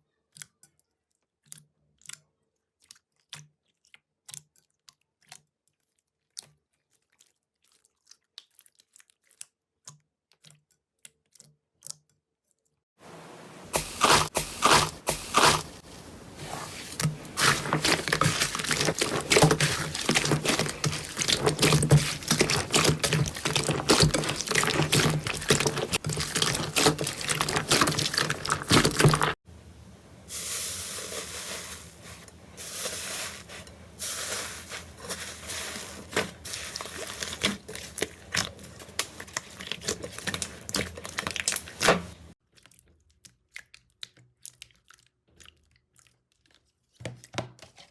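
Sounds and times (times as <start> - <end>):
slime crackling and squishing: 13.6 - 46.9
steady hiss: 29.7 - 34.6.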